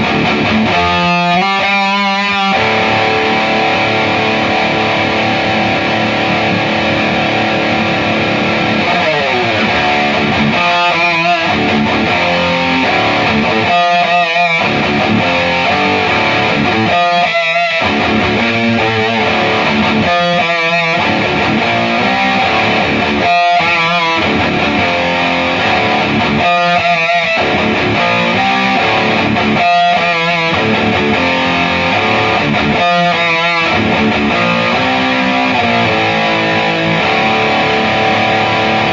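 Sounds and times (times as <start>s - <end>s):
distorted electric guitar riff: 0.0s - 38.9s.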